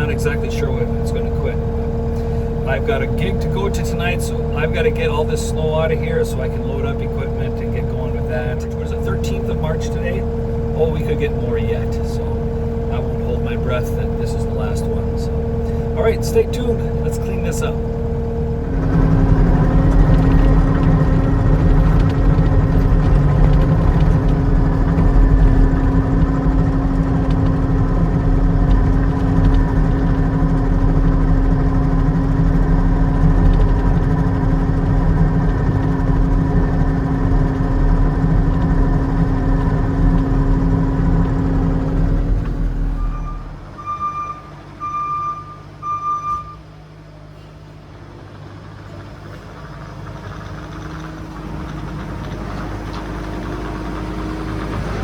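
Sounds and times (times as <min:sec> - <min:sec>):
diesel engine running: 0:00.0 - 0:55.0
low engine hum: 0:00.0 - 0:55.0
short high beeps: 0:43.0 - 0:46.7.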